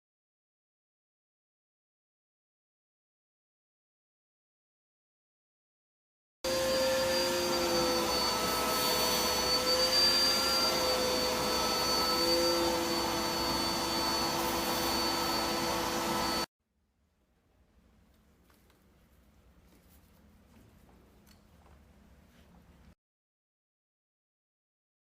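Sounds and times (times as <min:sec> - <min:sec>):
small electric motor whining: 0:06.5 - 0:16.5.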